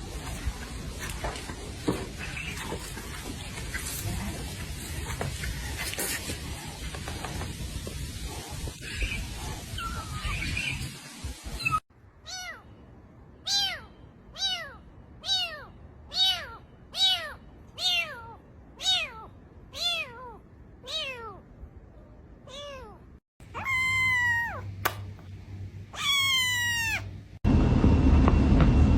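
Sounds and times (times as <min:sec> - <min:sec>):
rustling: 0:00.0 - 0:11.0
cat meowing: 0:12.2 - 0:12.7, 0:13.4 - 0:21.4, 0:22.4 - 0:24.7, 0:25.9 - 0:27.1.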